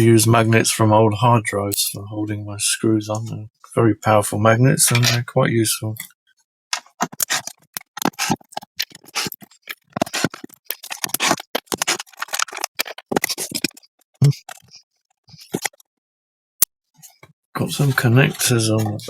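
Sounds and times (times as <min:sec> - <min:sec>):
small screws clicking and scraping: 0:06.7 - 0:15.9.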